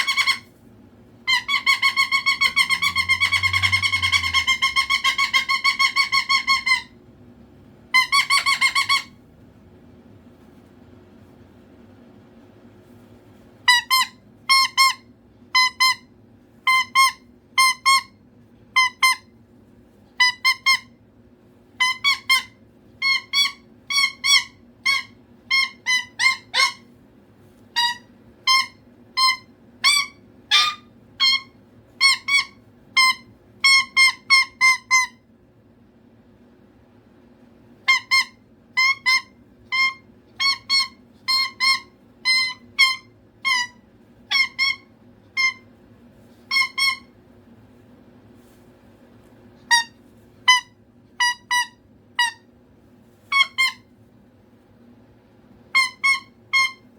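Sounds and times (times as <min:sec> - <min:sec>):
cockatoo calling: 0:00.0 - 0:00.5, 0:01.3 - 0:07.0, 0:07.9 - 0:09.2, 0:13.7 - 0:16.1, 0:20.2 - 0:21.0, 0:21.8 - 0:26.9, 0:27.7 - 0:35.2, 0:37.8 - 0:45.7, 0:46.4 - 0:47.2, 0:49.6 - 0:52.5, 0:53.3 - 0:53.9, 0:55.7 - 0:56.9.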